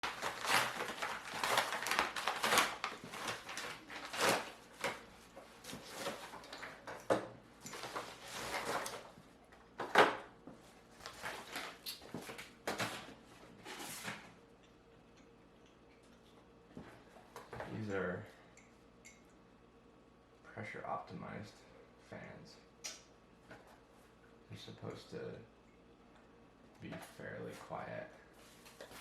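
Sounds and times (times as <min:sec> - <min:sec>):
cardboard rustling and scraping: 0:00.0 - 0:07.0, 0:07.7 - 0:09.2, 0:11.0 - 0:14.3.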